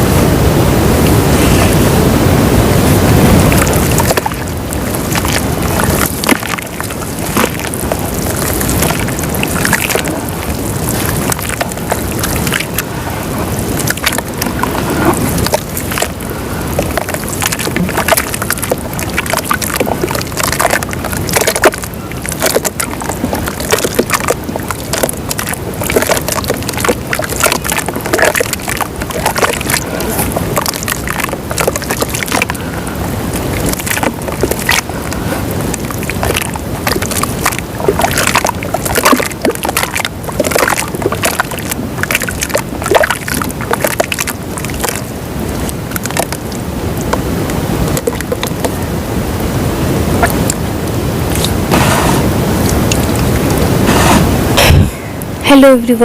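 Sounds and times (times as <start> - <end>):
dirt dissolving in sloshing water: 3.3 - 48.8
small crackles and pops: 3.4 - 48.8, 50.2 - 51.6, 52.6 - 53.6.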